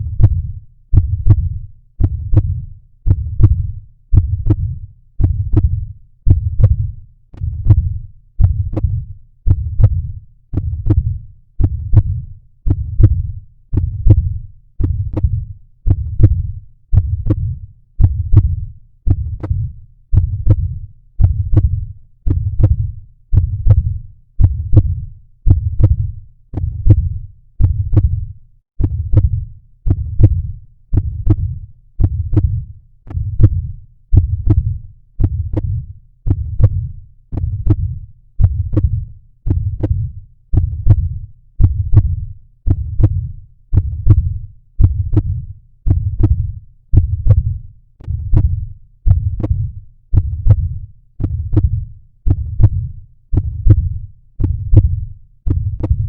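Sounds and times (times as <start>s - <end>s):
heartbeat thumps: 0.0s - 56.0s.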